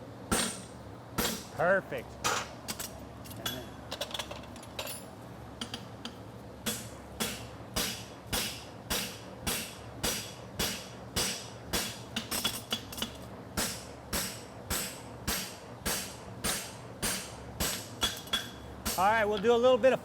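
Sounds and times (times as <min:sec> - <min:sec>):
fan hum: 0:00.0 - 0:20.0
hammer striking steel on anvil: 0:00.3 - 0:01.5, 0:06.6 - 0:19.5.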